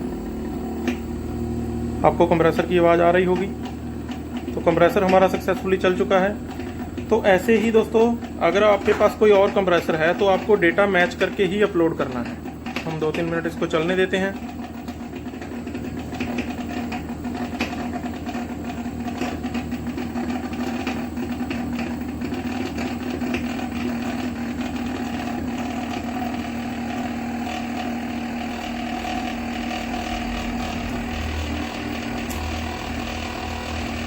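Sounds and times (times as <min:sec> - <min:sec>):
compressor humming: 0:00.0 - 0:34.0.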